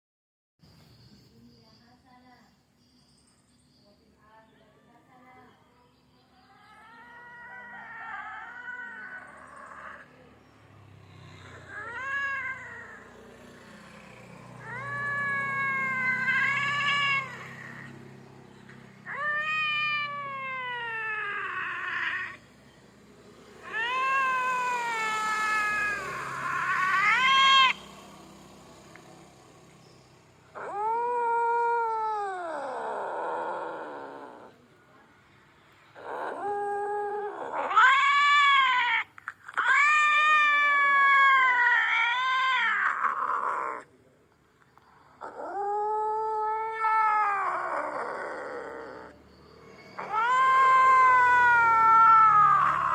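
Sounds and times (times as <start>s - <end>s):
cat yowling: 6.5s - 10.5s, 11.2s - 22.8s, 23.4s - 27.9s, 30.5s - 34.6s, 35.9s - 43.9s, 44.8s - 52.9s.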